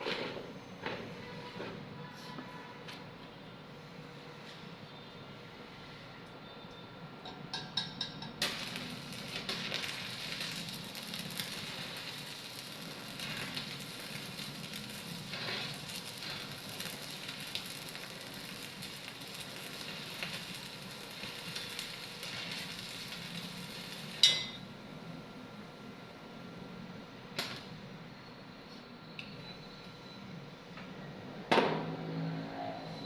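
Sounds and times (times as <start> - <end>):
arc welding crackling and sizzling: 8.0 - 28.1
welding arc sputters: 8.4 - 24.6.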